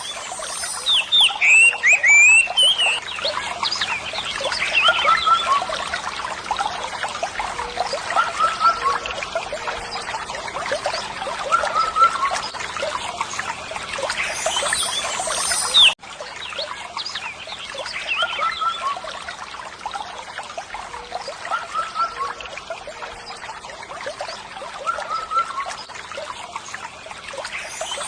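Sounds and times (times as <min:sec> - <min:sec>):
water trickling and splashing: 0:00.0 - 0:28.0.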